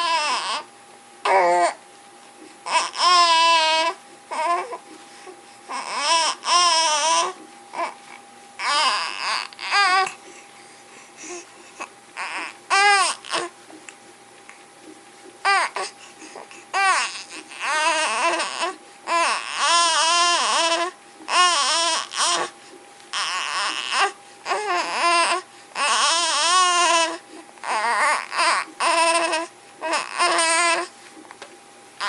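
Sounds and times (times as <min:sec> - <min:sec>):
baby making high-pitched noises: 0:00.0 - 0:01.8, 0:02.7 - 0:04.8, 0:05.7 - 0:08.0, 0:08.6 - 0:10.2, 0:12.2 - 0:13.5, 0:16.7 - 0:22.5, 0:23.1 - 0:30.9.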